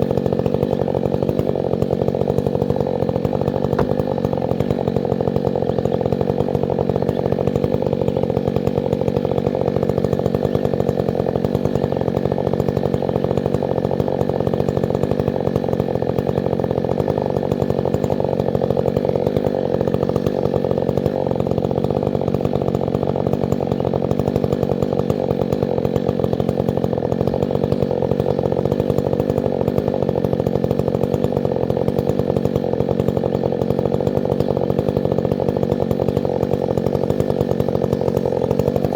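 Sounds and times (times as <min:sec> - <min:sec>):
chainsaw engine running: 0:00.0 - 0:38.9.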